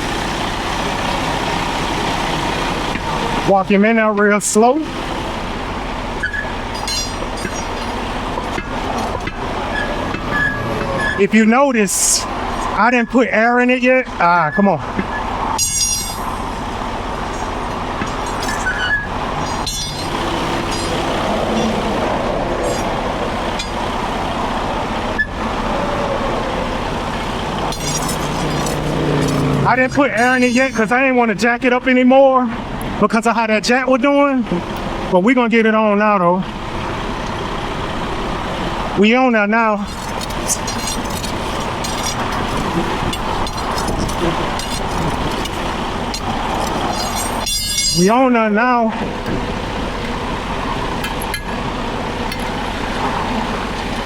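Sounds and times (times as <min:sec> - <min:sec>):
heavy traffic passing: 0:00.0 - 0:54.0
short high clicks and rattles: 0:27.6 - 0:30.9, 0:39.8 - 0:48.1.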